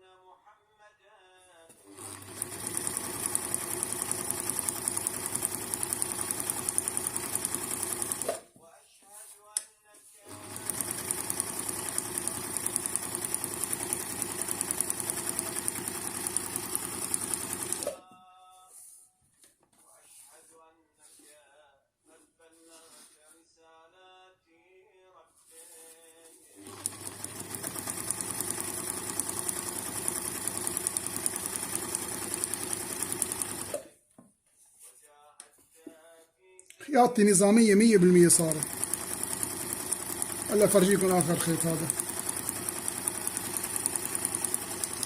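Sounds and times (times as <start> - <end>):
sewing machine running: 1.8 - 8.4, 10.2 - 18.0, 26.6 - 33.9, 37.9 - 45.0.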